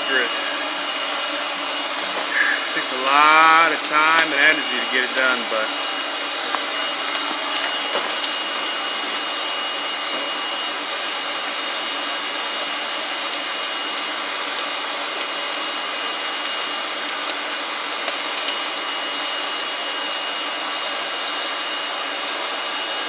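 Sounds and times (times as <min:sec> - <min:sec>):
thin high whine: 0:00.0 - 0:11.3.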